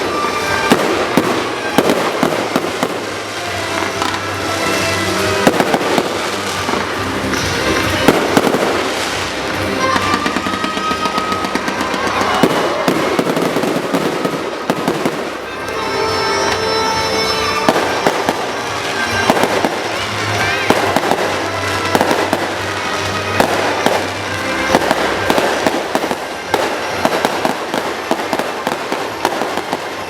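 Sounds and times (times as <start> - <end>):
fireworks bangs and crackling: 0.0 - 30.0
music playing: 0.0 - 30.0.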